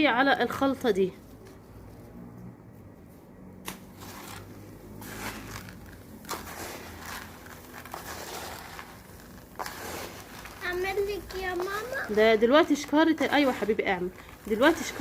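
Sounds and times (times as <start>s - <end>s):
grain stirred by hand: 3.0s - 15.0s.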